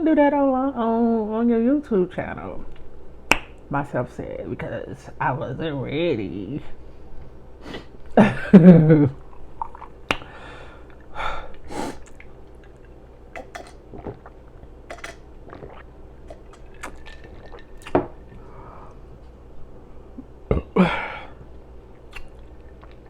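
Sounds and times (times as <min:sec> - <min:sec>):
lip smacks and tongue clicks: 0:09.3 - 0:10.3, 0:11.9 - 0:18.3, 0:21.9 - 0:23.0.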